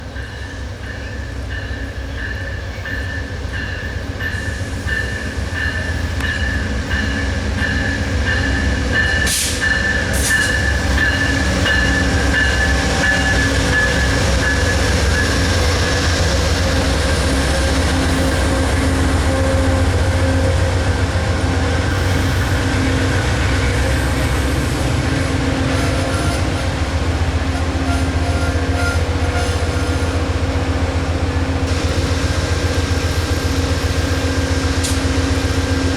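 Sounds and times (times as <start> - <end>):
diesel locomotives rumbling: 0.0 - 35.9
high-pitched wheel squeal: 27.7 - 30.2.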